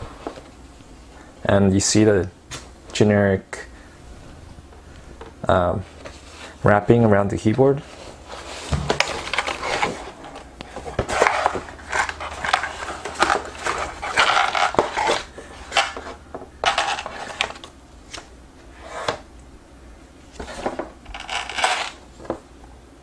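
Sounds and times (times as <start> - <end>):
packaging rustling and crinkling: 8.0 - 17.7.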